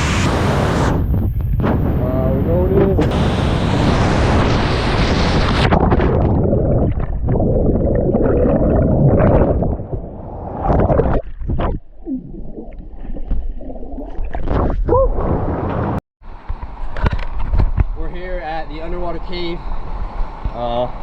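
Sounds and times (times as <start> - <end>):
underwater gurgling and bubbling: 5.0 - 15.5.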